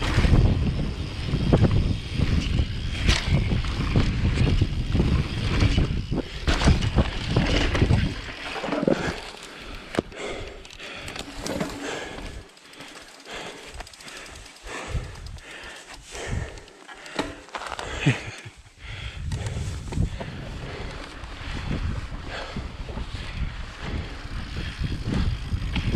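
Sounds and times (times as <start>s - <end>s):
wind rushing over microphone: 0.0s - 10.6s, 17.9s - 25.9s
bike rattling: 0.0s - 25.9s
tyres on dirt: 1.8s - 25.9s.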